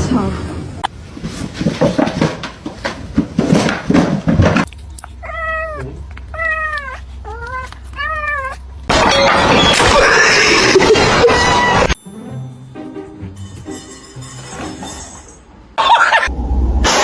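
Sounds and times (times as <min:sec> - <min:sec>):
cat meowing: 0:05.0 - 0:08.8.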